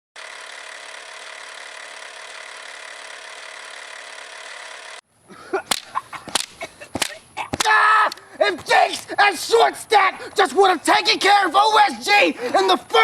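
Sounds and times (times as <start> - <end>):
sharp clicks and knocks: 5.7 - 8.7.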